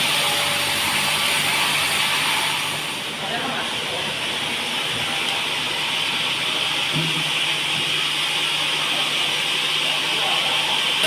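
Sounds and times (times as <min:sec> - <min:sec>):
band saw cutting log: 0:00.0 - 0:03.0.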